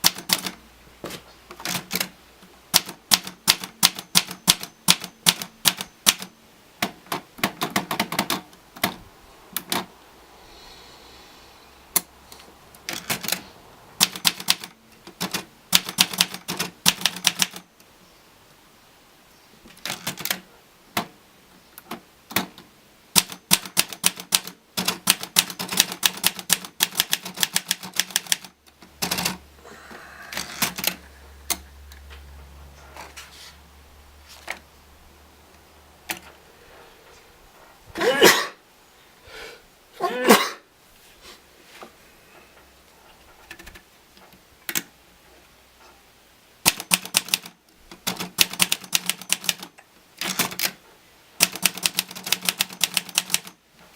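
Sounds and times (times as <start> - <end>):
typewriter keys clicking: 0.0 - 0.6, 1.6 - 9.0, 12.8 - 13.4, 14.0 - 17.7, 19.7 - 20.4, 21.8 - 29.4, 30.3 - 31.6, 46.6 - 50.8, 51.4 - 53.6.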